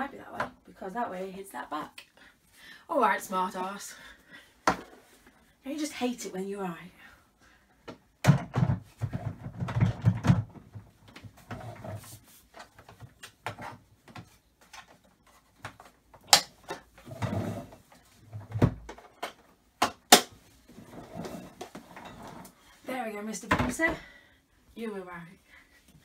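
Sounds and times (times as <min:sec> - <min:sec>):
plastic parts knocking and rattling: 0:07.9 - 0:11.8.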